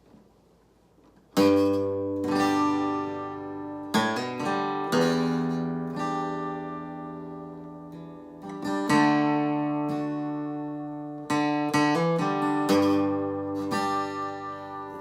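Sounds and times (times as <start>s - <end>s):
acoustic guitar strumming chords: 1.3s - 15.0s.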